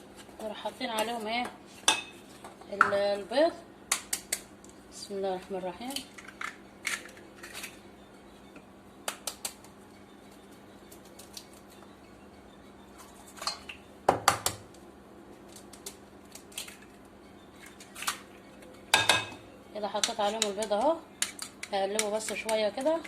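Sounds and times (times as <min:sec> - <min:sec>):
eggshells tapping on bowl: 0:19.9 - 0:23.0.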